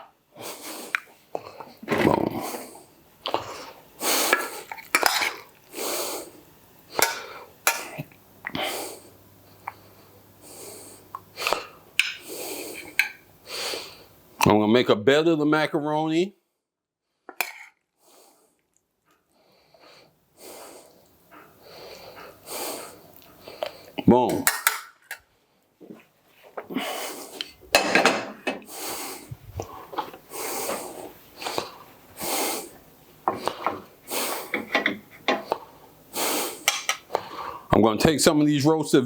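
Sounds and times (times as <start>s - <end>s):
spoon scraping dishes: 4.4s - 5.5s, 12.0s - 13.2s, 17.3s - 17.7s, 34.5s - 35.6s, 36.6s - 37.1s.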